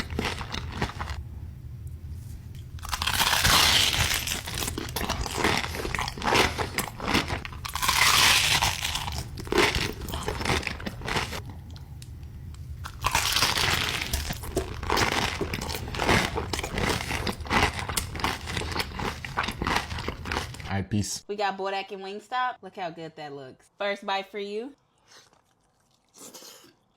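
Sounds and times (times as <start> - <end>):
crunchy food chewing: 0.0 - 1.2, 2.7 - 12.0, 12.8 - 20.7, 25.0 - 26.9.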